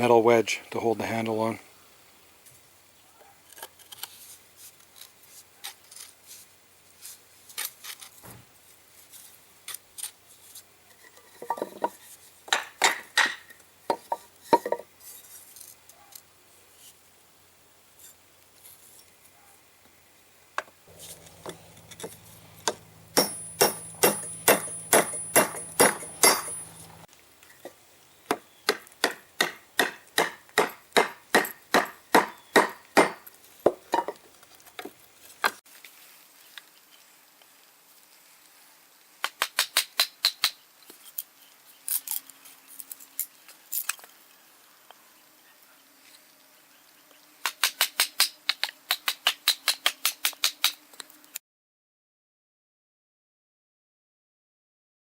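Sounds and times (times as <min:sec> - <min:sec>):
hammer striking metal wedge: 0:20.9 - 0:27.0, 0:28.7 - 0:33.2.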